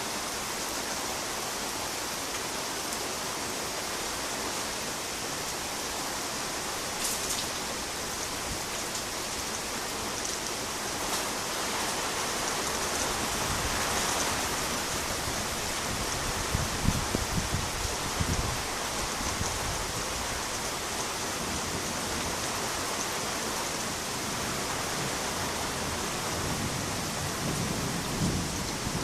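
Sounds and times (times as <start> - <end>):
heavy rain hissing: 0.0 - 29.0
low thunder rumble: 26.4 - 29.0.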